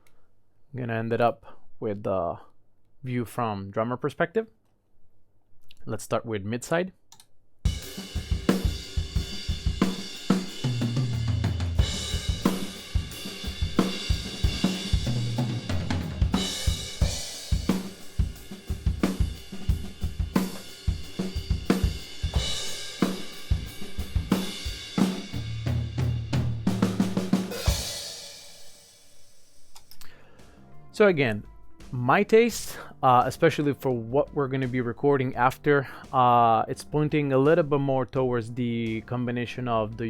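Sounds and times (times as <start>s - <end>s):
drum kit playing a groove: 7.6s - 30.6s.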